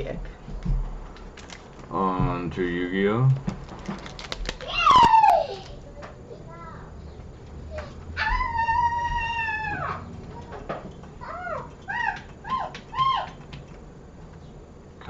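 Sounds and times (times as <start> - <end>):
cat meowing: 7.8 - 10.1.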